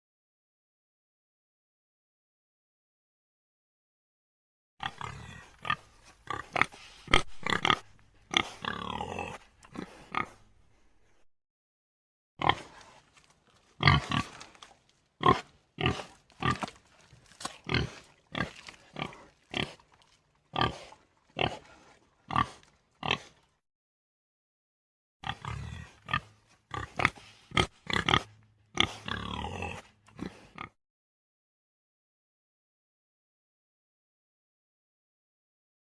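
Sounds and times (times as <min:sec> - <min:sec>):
warthog grunting: 0:04.8 - 0:10.4, 0:15.2 - 0:16.7, 0:17.6 - 0:19.9, 0:20.5 - 0:23.4, 0:25.2 - 0:30.8.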